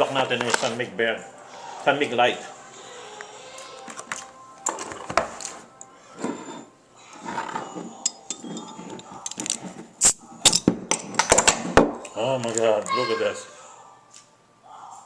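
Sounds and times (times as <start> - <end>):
glass and tableware clinking: 7.2 - 9.8.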